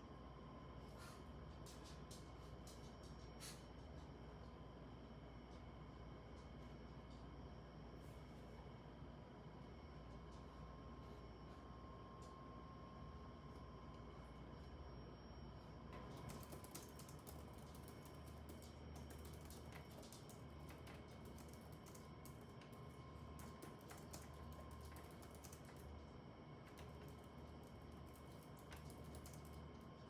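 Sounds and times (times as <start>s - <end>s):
low steady hum: 0.0s - 30.0s
keyboard typing: 16.1s - 25.9s.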